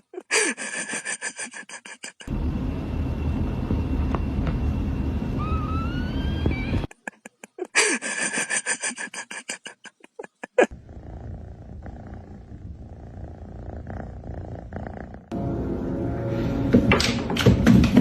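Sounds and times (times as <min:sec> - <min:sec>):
cat low steady rumble: 0:10.7 - 0:15.4.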